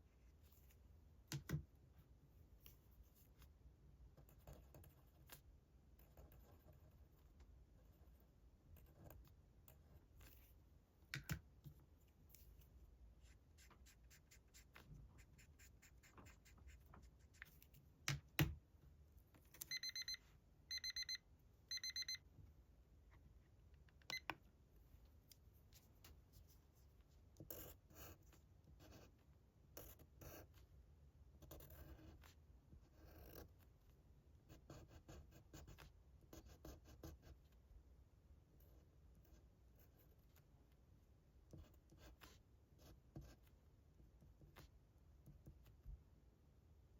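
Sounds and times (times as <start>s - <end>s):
pen scratching on paper: 13.2s - 17.6s, 41.5s - 43.6s
electronic timer alarm beeping: 19.6s - 22.2s.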